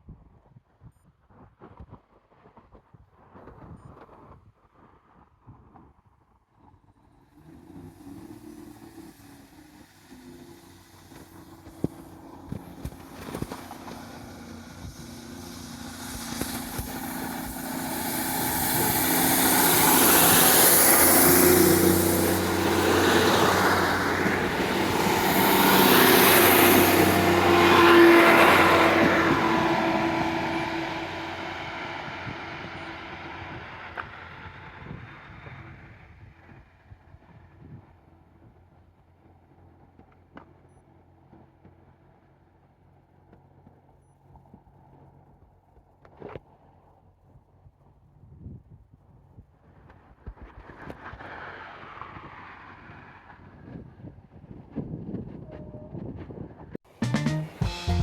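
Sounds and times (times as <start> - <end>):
diesel vehicle passing: 7.1 - 36.0.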